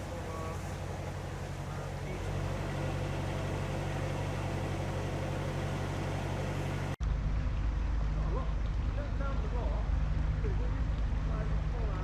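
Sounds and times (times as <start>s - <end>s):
boat diesel engine running: 0.0s - 7.0s.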